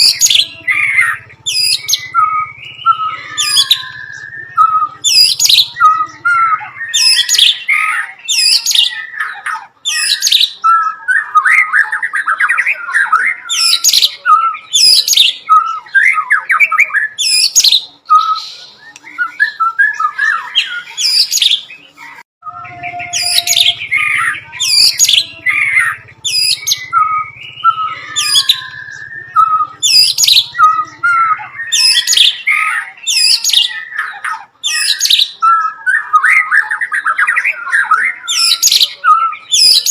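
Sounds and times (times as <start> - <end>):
bird singing sharp whistled notes: 0.0 - 9.3, 22.4 - 34.1
bird chattering phrases: 0.0 - 39.9.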